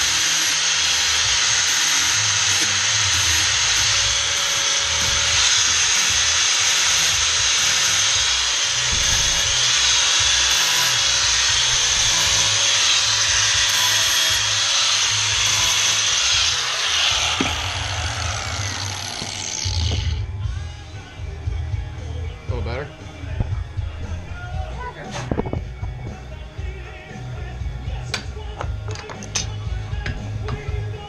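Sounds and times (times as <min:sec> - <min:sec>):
power grinder grinding steel: 0:00.0 - 0:20.9.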